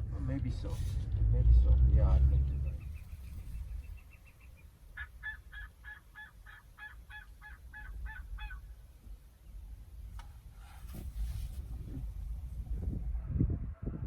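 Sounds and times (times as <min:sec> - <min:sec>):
wild turkey yelping: 0:02.6 - 0:09.1.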